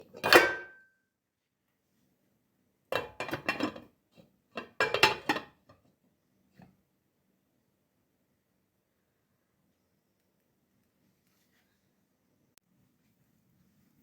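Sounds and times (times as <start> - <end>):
dishes and utensils clattering: 0.0 - 0.8, 3.0 - 3.9, 4.6 - 5.6.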